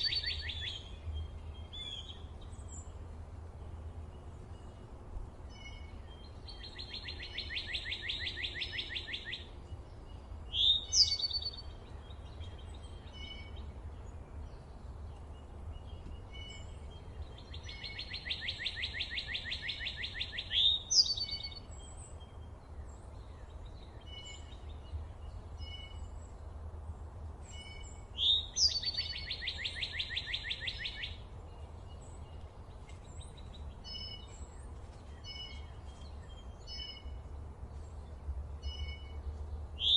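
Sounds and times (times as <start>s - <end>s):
faint bird chirps: 27.4s - 31.3s.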